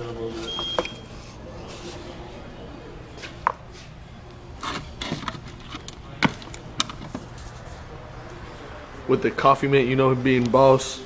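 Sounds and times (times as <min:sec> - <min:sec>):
steady low hum: 0:00.0 - 0:11.0
cups clicking and tapping: 0:03.2 - 0:03.6, 0:04.3 - 0:07.6.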